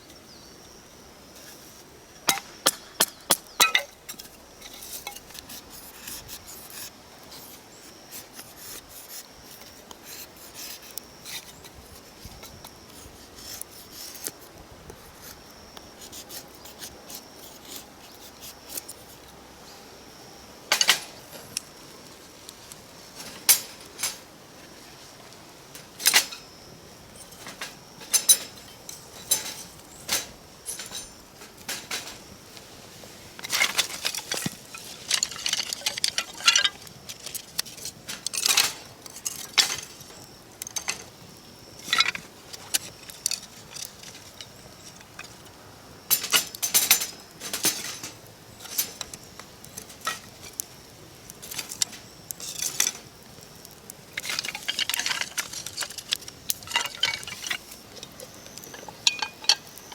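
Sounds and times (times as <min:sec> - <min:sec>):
metal clinks and knocks: 0:02.3 - 0:05.3, 0:27.1 - 0:32.2, 0:33.4 - 0:41.1, 0:46.1 - 0:49.2, 0:54.2 - 0:59.9
metal utensils scraping cookware: 0:27.2 - 0:32.2, 0:54.2 - 0:57.7, 0:58.7 - 0:59.8.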